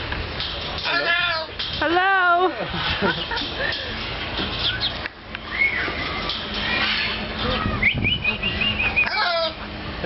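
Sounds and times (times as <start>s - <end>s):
talking bird whistling: 4.6s - 6.9s, 7.5s - 9.6s.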